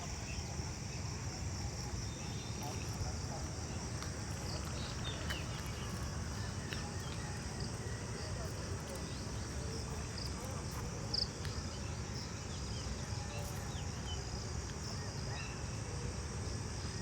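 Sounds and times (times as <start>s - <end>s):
insects chirping chorus: 0.0s - 17.0s.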